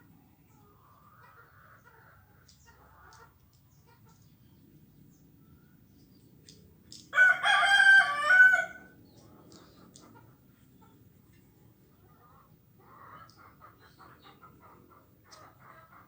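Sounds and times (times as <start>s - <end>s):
rooster crowing: 7.1s - 8.9s.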